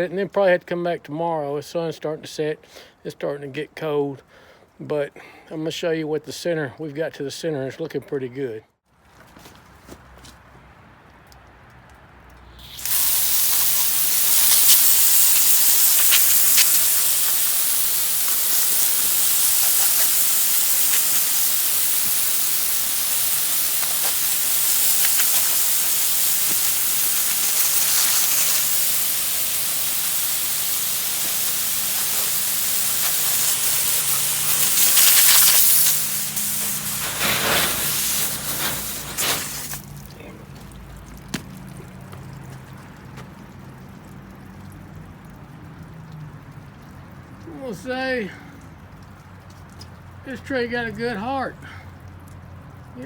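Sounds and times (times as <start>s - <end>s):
hose water spraying on wood: 12.4s - 44.7s.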